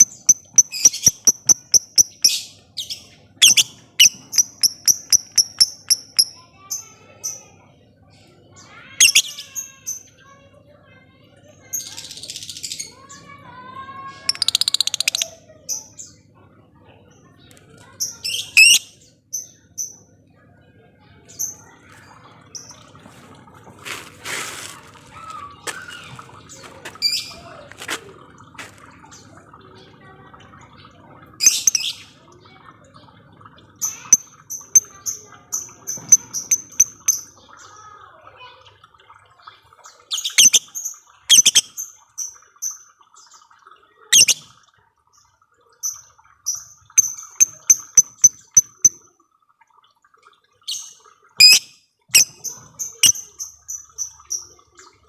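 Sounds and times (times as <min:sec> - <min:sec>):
rapid high bird chirps: 0:00.0 - 0:06.3, 0:18.2 - 0:18.9, 0:41.3 - 0:41.8, 0:44.1 - 0:44.4, 0:50.7 - 0:54.5.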